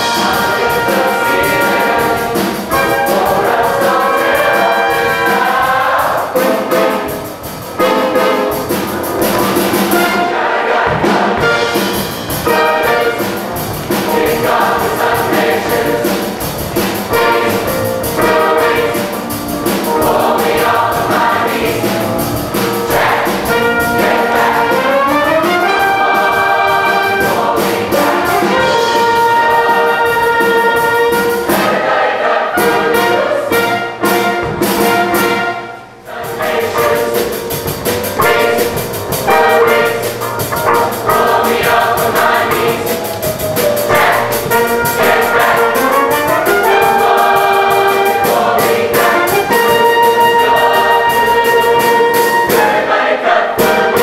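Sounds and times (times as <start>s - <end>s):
choir singing: 0.0s - 54.0s
concert band with brass: 0.0s - 54.0s.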